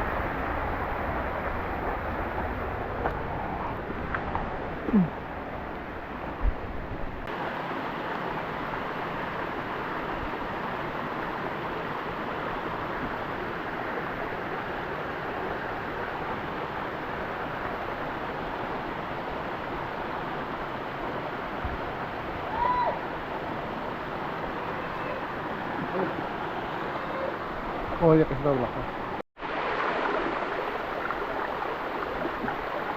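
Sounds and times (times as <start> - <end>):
waterfall rushing: 7.2 - 32.9.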